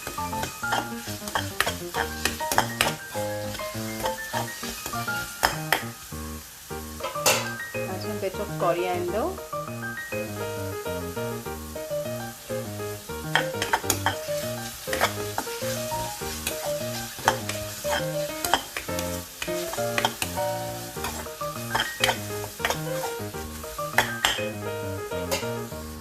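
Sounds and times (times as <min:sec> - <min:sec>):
spoon scraping a pan: 0:00.0 - 0:06.0, 0:07.0 - 0:07.7, 0:13.3 - 0:24.5, 0:25.2 - 0:25.6
onions sizzling in hot oil: 0:00.0 - 0:26.0.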